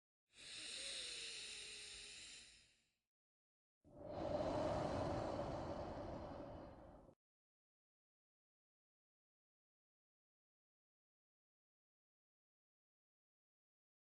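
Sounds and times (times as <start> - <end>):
person breathing deeply: 0.4 - 2.3, 3.9 - 7.2.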